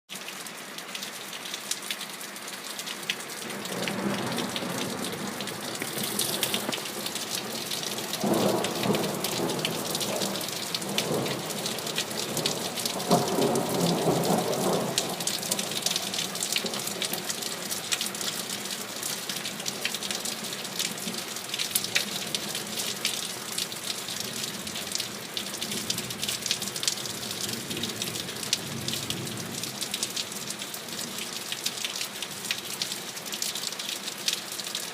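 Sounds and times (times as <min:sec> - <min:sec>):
rain pattering: 0:00.1 - 0:34.9
distant thunder rumbling: 0:03.6 - 0:15.8.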